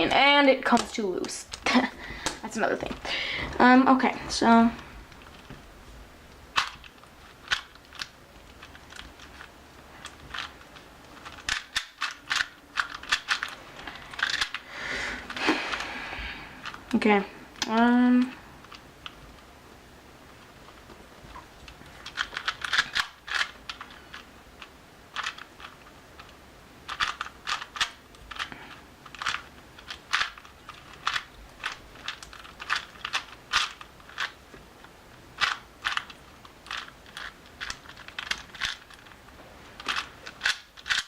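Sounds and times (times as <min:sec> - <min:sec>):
plastic puzzle cube clicking: 0:06.5 - 0:15.9, 0:21.3 - 0:41.0.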